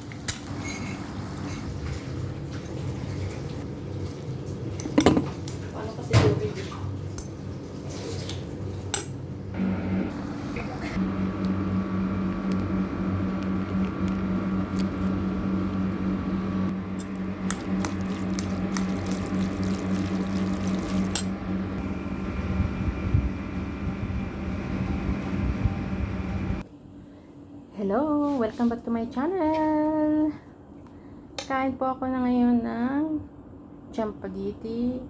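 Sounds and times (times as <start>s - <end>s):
low hum: 9.5s - 26.6s.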